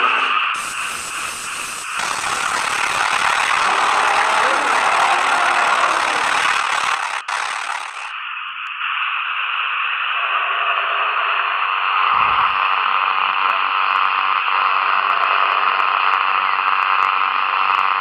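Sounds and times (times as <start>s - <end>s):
radio static hiss: 0.0s - 18.0s.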